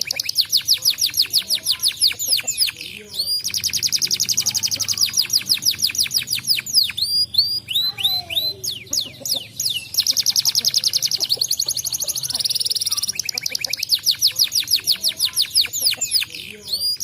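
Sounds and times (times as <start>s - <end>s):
canary singing: 0.0s - 17.0s.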